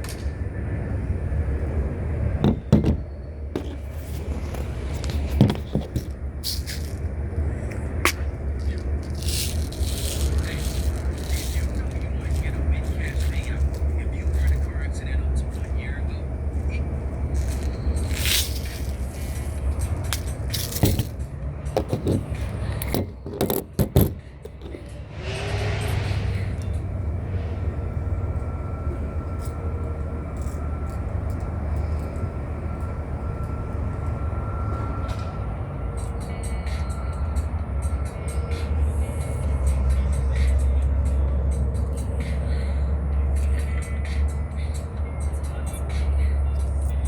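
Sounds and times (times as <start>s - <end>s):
low steady hum: 0.0s - 37.9s
low rumble: 24.5s - 35.0s.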